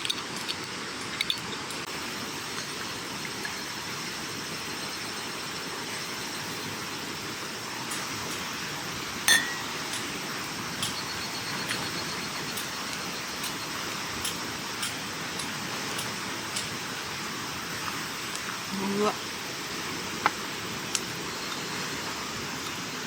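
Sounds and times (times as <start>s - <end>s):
sharp clink: 9.3s - 10.1s.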